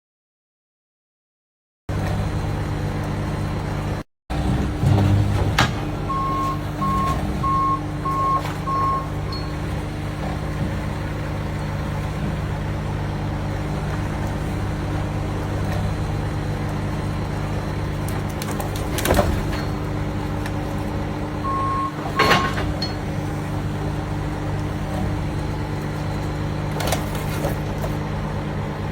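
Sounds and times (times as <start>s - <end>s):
hydraulic machine humming: 1.9s - 28.9s
short warning beeps: 6.1s - 9.6s, 21.4s - 22.6s.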